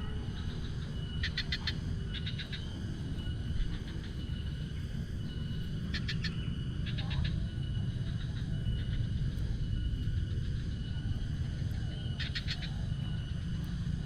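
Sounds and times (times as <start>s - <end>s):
low rumble: 0.0s - 14.0s
small animal clicking trills: 0.2s - 14.0s.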